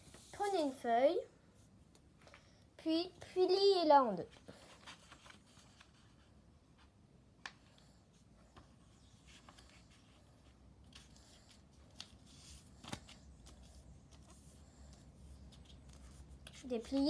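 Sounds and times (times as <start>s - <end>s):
paper rustling and crackling: 4.3s - 7.7s, 8.6s - 17.0s.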